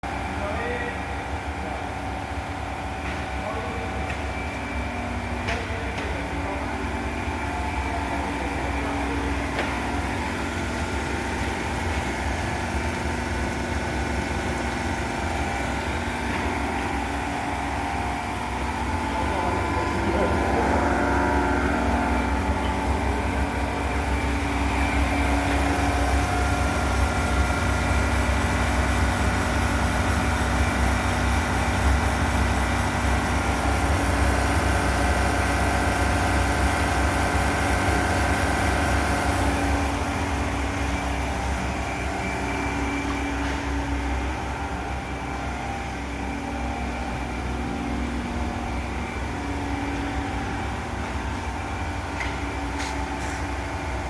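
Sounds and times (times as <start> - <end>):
ice machine humming and whining: 0.1 - 54.0.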